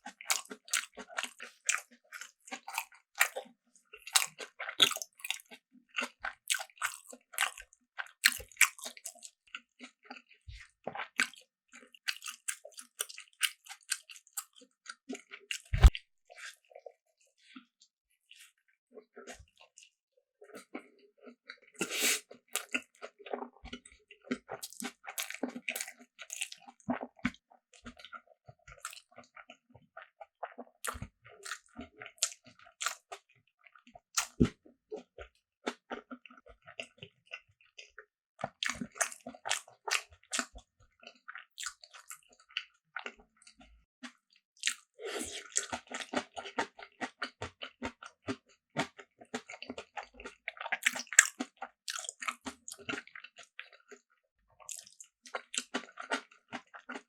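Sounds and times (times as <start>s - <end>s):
crunchy chewing: 0.0s - 54.0s, 54.6s - 57.0s
mouth clicks and crackles: 15.5s - 16.0s, 45.4s - 54.0s.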